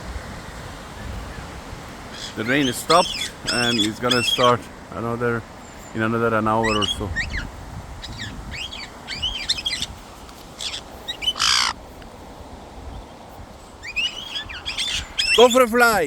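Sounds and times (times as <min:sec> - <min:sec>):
wind rumble on microphone: 0:00.0 - 0:15.4
parrots chattering: 0:02.1 - 0:04.7, 0:06.5 - 0:09.9, 0:10.6 - 0:11.8, 0:13.8 - 0:16.0
parrot squawk: 0:02.2 - 0:04.5, 0:10.6 - 0:11.8, 0:13.9 - 0:15.5.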